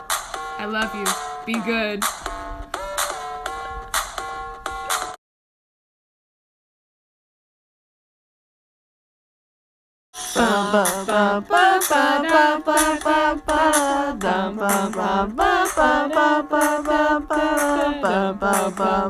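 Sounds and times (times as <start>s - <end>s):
women singing quick notes: 10.4s - 19.0s.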